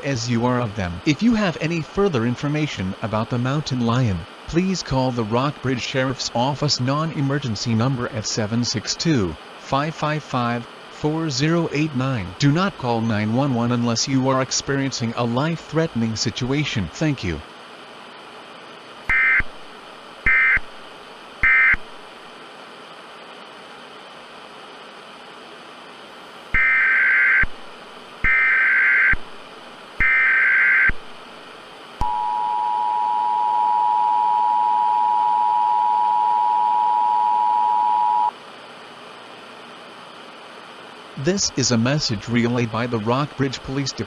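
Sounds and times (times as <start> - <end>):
tape hiss: 0.0 - 44.0
two-tone attention signal: 32.0 - 38.3.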